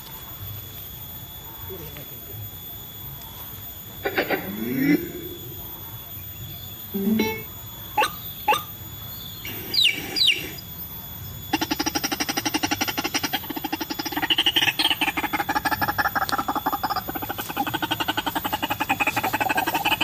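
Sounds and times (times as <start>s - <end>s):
bird pulsed croaking call: 7.0s - 10.6s, 11.5s - 20.0s.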